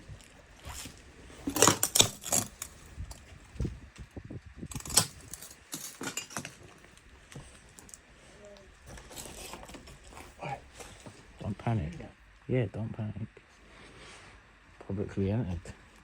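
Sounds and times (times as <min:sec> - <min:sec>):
clinks and knocks of hard objects: 0:00.2 - 0:03.7, 0:04.7 - 0:11.2.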